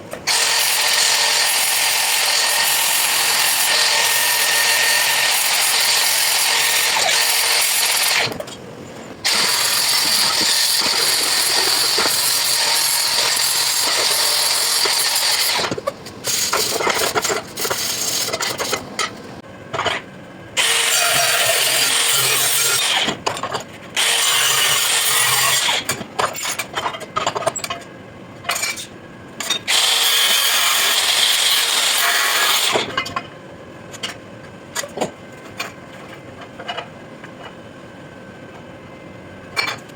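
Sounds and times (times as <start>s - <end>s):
power tool hissing on metal: 0.3s - 8.3s, 9.2s - 15.7s.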